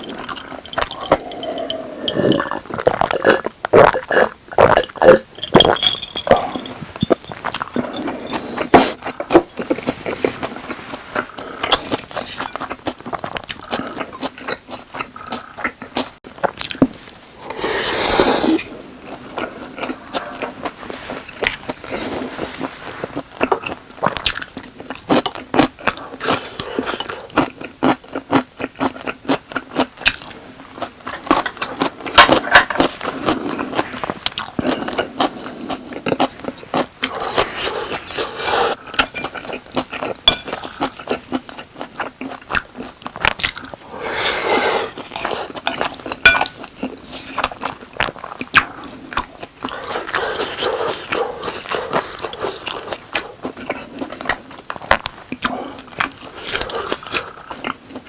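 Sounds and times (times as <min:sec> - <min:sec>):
chewing with wet clicks: 0:00.0 - 0:09.8, 0:11.2 - 0:16.9, 0:23.2 - 0:43.9, 0:45.0 - 0:58.0
utensil scraping a dish: 0:31.2 - 0:39.4, 0:43.8 - 0:46.6, 0:49.7 - 0:53.4.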